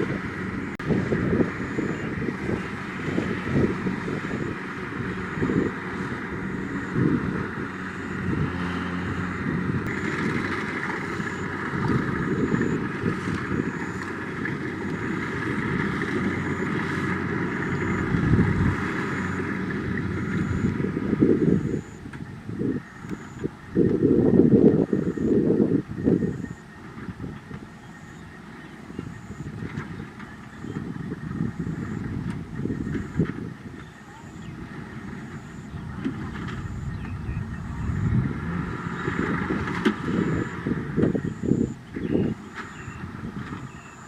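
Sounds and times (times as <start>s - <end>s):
threshing machinery whirring and rattling: 0.0s - 21.1s
combine harvester diesel engine: 0.0s - 44.0s.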